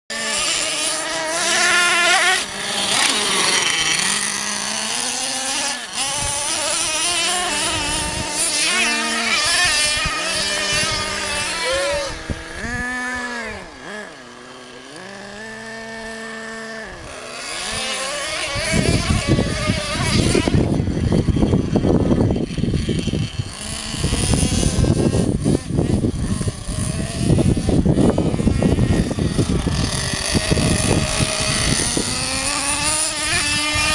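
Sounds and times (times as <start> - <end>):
nitro rc truck engine revving: 0.1 - 33.9
noisy rumble: 18.1 - 33.9.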